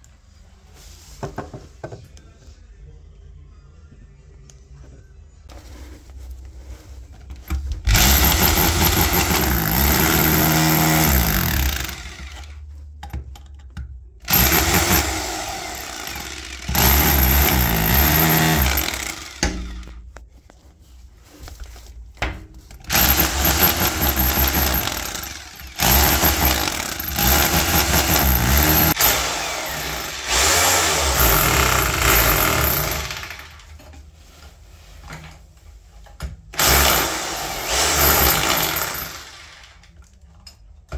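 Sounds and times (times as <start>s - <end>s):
demolition hammer chiselling tiles: 7.9s - 12.4s, 14.3s - 19.9s, 22.8s - 33.6s, 36.6s - 39.4s.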